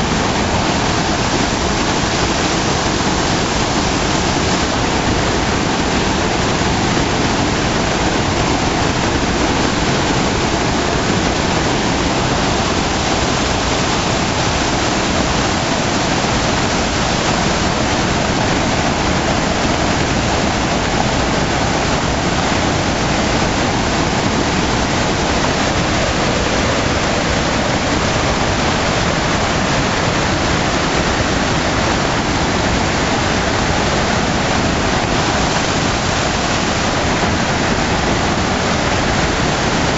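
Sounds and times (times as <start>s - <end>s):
floodwater rushing: 0.0s - 39.9s.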